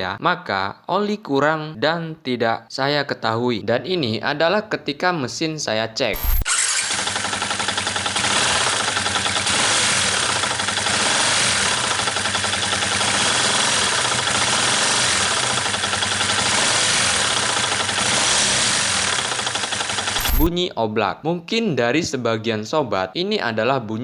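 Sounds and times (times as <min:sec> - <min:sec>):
motorcycle engine knocking: 0:06.8 - 0:20.4.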